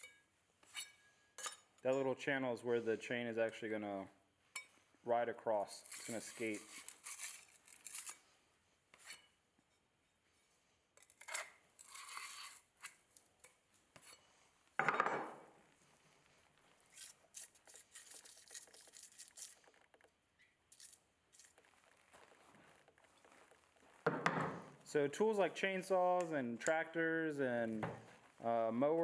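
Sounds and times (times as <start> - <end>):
metal tool scraping chainsaw bar: 5.7 - 8.1, 11.2 - 12.9.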